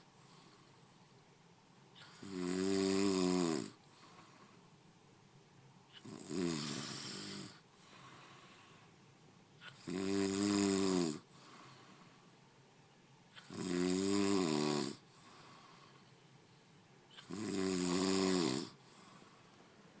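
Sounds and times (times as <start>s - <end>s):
man snoring loudly: 2.0s - 3.8s, 6.0s - 7.6s, 9.6s - 11.2s, 13.4s - 15.0s, 17.1s - 18.8s.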